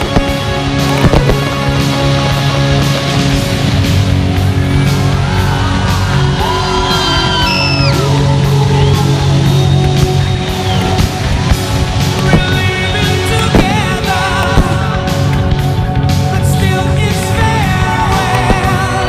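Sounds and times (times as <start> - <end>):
heavy metal rock music: 0.0 - 19.0.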